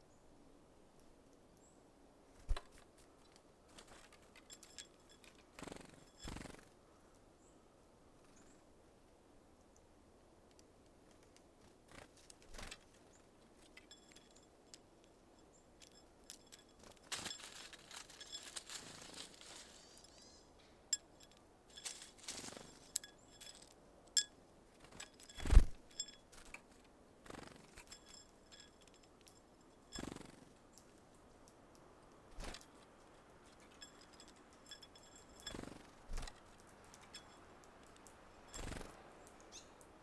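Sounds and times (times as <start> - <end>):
birds tapping and clicking: 2.4 - 6.6, 10.5 - 40.0
wings fluttering: 2.4 - 6.7, 11.6 - 14.4, 15.8 - 20.4, 21.0 - 23.7, 24.8 - 30.9, 32.3 - 32.8, 33.4 - 39.0.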